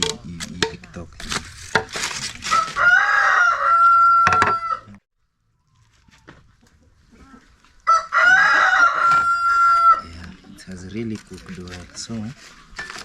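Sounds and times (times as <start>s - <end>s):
rooster crowing: 2.5s - 5.0s, 7.8s - 10.1s.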